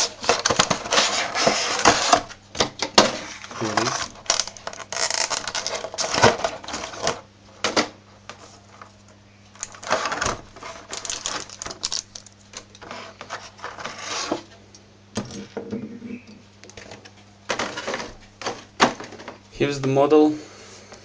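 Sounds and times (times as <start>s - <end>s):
packaging rustling and clicks: 3.1s - 7.2s, 9.6s - 13.8s.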